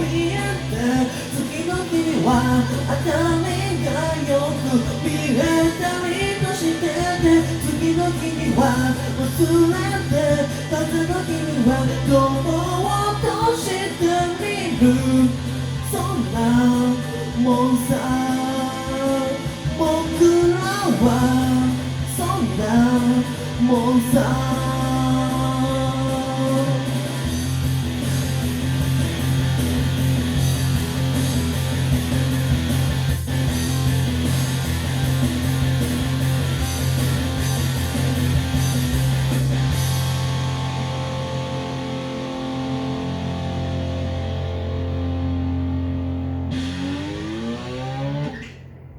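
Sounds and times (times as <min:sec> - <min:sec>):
pop-rock song with guitar and bass: 0:00.0 - 0:48.9
steady drum beat: 0:17.8 - 0:40.4.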